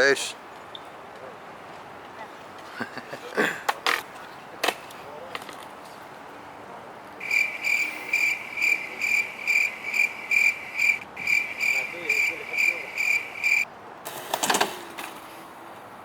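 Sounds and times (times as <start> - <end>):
cricket chirping: 7.2 - 13.7.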